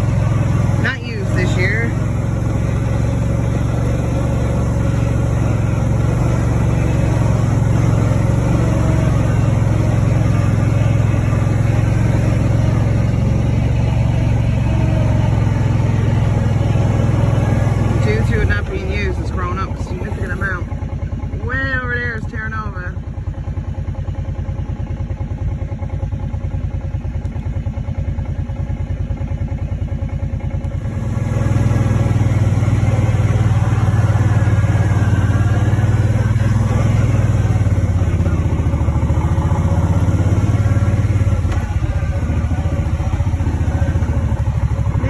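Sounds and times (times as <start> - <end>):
small vehicle engine running: 0.0 - 45.0.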